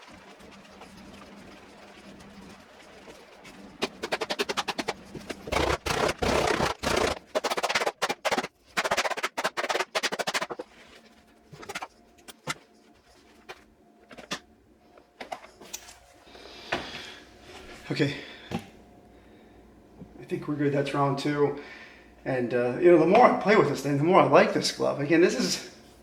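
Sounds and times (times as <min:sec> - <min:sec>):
mallet pounding leather glove: 0:03.8 - 0:10.6.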